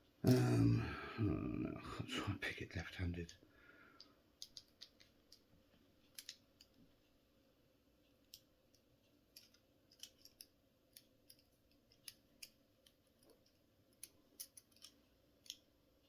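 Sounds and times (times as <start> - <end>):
lock pick clicking in handcuffs: 4.4 - 5.4, 6.1 - 6.8, 9.3 - 15.7.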